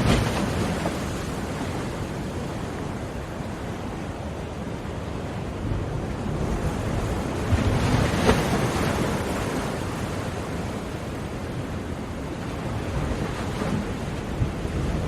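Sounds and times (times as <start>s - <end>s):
wave breaking: 0.0s - 2.0s.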